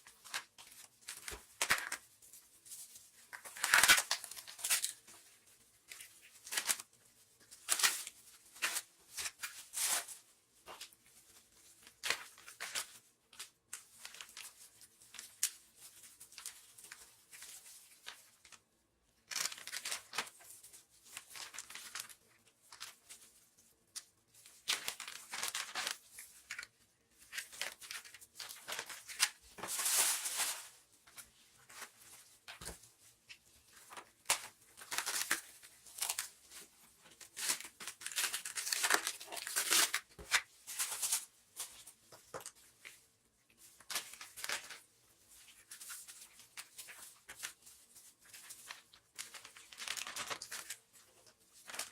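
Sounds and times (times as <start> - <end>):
plastic wrap crinkling: 0.0 - 43.0, 43.6 - 51.9
plastic tearing: 3.3 - 5.0, 37.2 - 41.2.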